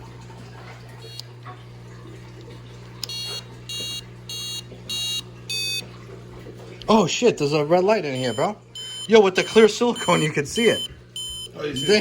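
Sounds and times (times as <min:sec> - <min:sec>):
steady low hum: 0:00.0 - 0:12.0
high-pitched electronic beeps: 0:03.0 - 0:05.8, 0:08.2 - 0:12.0.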